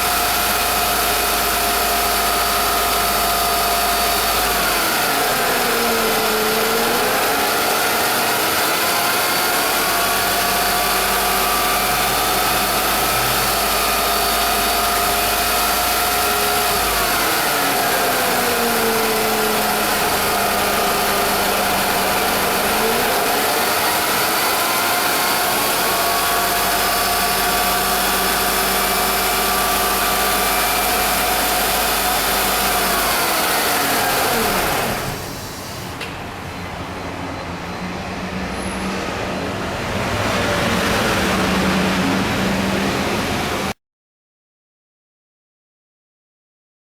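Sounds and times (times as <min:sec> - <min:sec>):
car engine running: 0:00.0 - 0:35.5
power steering pump whine: 0:00.0 - 0:37.5.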